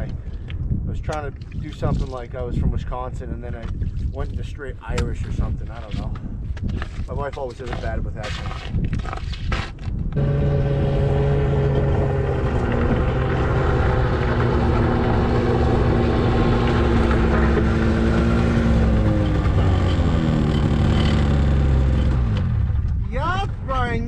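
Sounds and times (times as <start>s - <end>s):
ice auger engine drilling: 10.2s - 22.4s.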